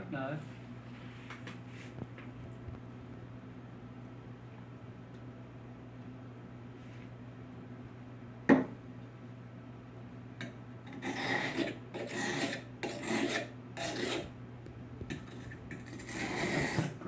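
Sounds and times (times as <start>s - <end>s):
knife rasping on sharpener: 10.9s - 14.3s, 15.1s - 17.0s.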